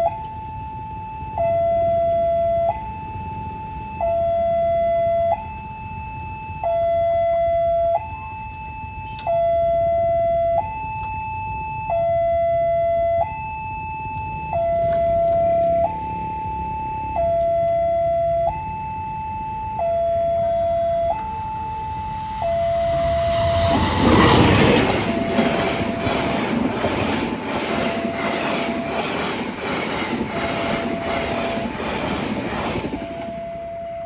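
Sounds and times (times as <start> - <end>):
level crossing two-tone alarm: 0.0 - 34.0.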